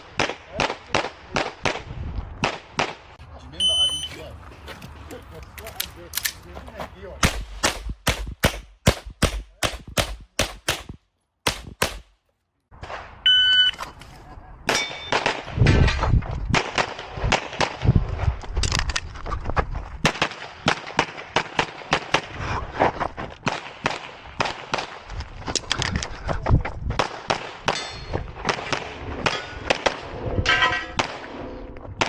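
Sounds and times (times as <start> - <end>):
handgun shots: 7.2 - 12.2.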